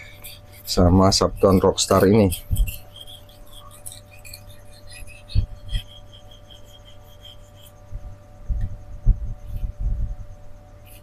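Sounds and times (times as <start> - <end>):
knife blade scraping on whetstone: 0.0 - 7.8.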